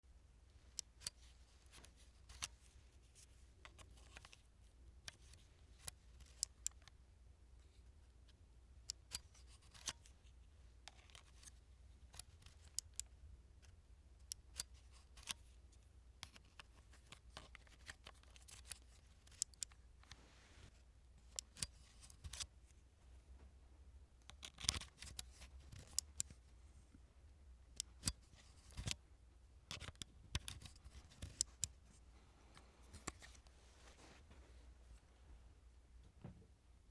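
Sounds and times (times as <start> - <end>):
memory card clicking in reader slot: 21.3 - 22.5, 24.2 - 26.4, 27.8 - 29.0, 29.7 - 31.8.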